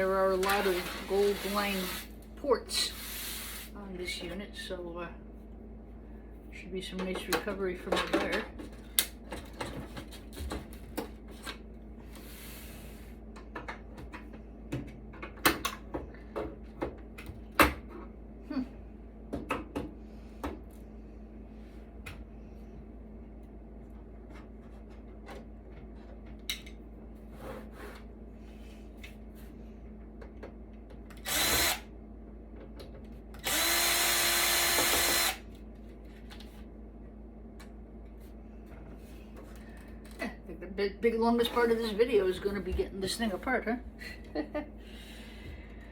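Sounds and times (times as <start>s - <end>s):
cordless drill-driver running: 31.2s - 31.9s, 33.4s - 35.5s.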